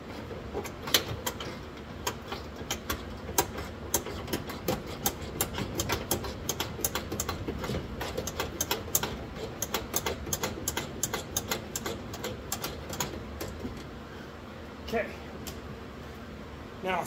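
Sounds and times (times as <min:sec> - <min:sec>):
ratchet wrench clicking: 0:08.1 - 0:13.2.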